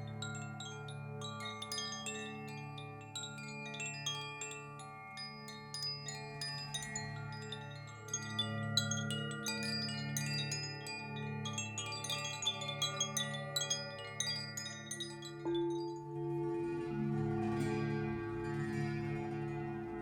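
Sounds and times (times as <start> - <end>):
wind chimes tinkling: 0.0 - 19.6
low pulsing drone: 15.5 - 20.0.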